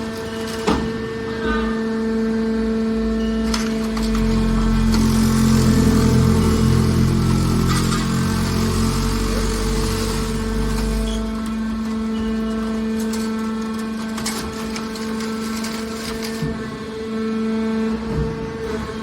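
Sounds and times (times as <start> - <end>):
hydraulic pump hum: 0.0 - 19.0.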